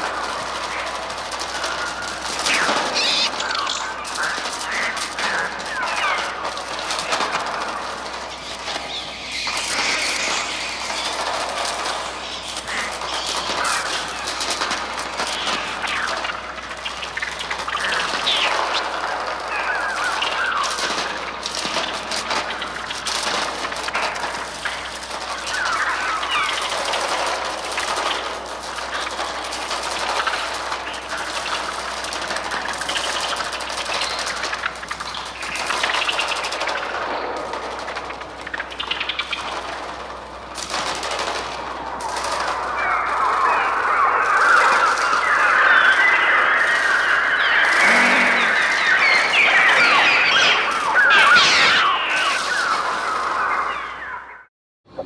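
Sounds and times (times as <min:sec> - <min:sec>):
electronic fluttering rattle: 0:00.0 - 0:54.1
electronic chirping and screeching glides: 0:01.6 - 0:06.4, 0:08.3 - 0:14.4, 0:42.8 - 0:54.3
electronic sliding bird calls: 0:02.9 - 0:05.4, 0:47.0 - 0:50.3.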